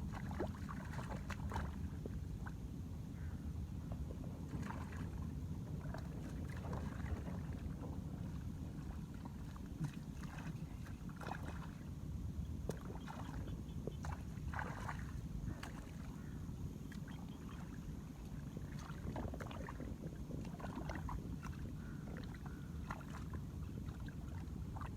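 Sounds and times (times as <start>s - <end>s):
shallow water splashing: 0.0s - 2.6s, 4.5s - 11.9s, 12.7s - 24.9s.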